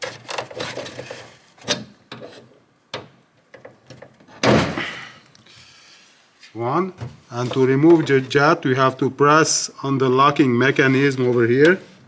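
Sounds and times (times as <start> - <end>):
rustling scrape: 0.0 - 2.5.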